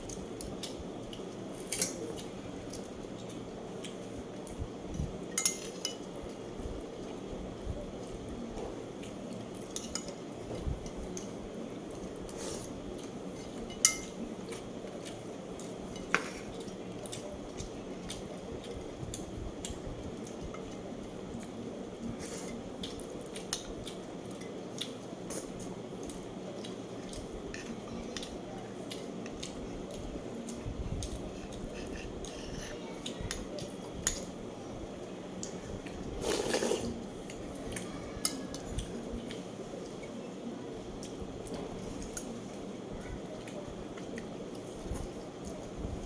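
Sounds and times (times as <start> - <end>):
cutlery clinking against dishes: 5.3 - 6.1, 9.7 - 10.2, 13.6 - 14.2.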